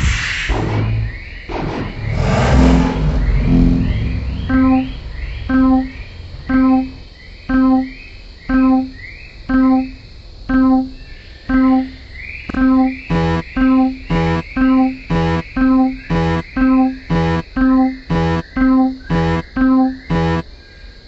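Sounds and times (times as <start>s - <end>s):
buzzy warning tone: 2.6s - 20.4s
railroad crossing electronic ding: 4.5s - 20.4s.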